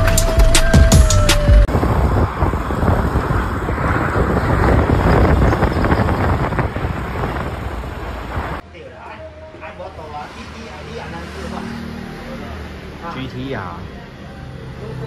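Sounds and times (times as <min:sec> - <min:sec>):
road noise: 0:00.0 - 0:15.0
scooter engine: 0:01.0 - 0:08.6, 0:10.1 - 0:15.0
wind buffeting microphone: 0:01.6 - 0:08.6.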